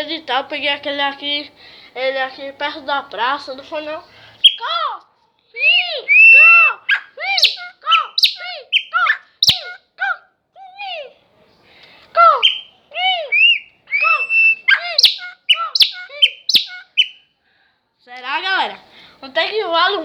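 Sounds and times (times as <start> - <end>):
bird singing whistles and chirps: 4.4 - 4.7, 5.7 - 9.8, 12.4 - 17.3.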